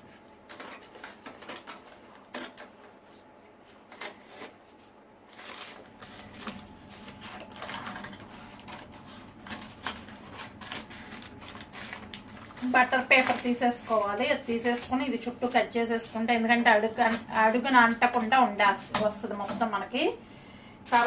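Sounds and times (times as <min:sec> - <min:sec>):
paper rustling: 0:00.4 - 0:14.6
scissors snipping paper: 0:03.9 - 0:15.1.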